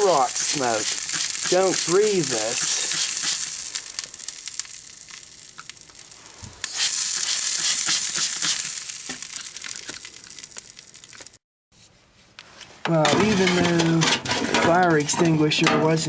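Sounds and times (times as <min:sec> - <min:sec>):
toner cartridge sizzling and popping: 0:00.0 - 0:11.4.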